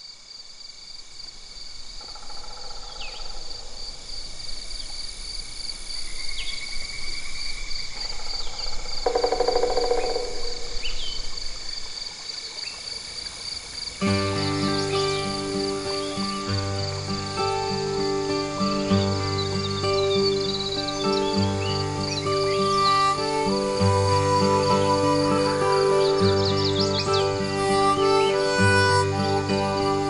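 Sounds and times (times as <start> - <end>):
crickets chirping: 0.0 - 30.0
downward-sweeping bird chirps: 8.4 - 11.8, 14.3 - 30.0.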